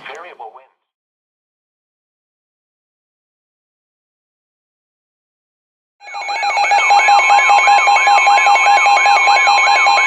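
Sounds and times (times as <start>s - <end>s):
weather radio warbling alarm: 6.0s - 10.0s.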